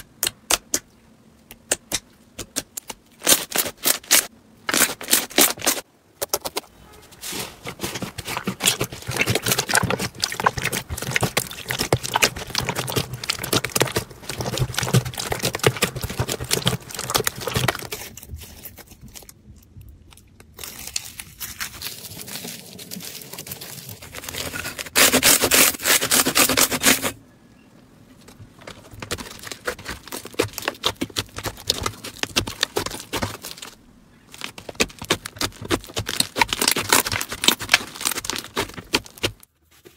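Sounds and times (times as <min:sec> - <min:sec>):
slime scraping: 0:02.6 - 0:19.4, 0:20.5 - 0:27.2, 0:28.2 - 0:39.9.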